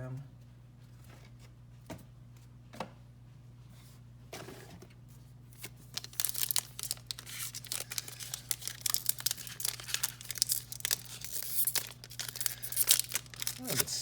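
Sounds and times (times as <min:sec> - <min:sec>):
foil wrapper tearing and crinkling: 0:05.6 - 0:14.0.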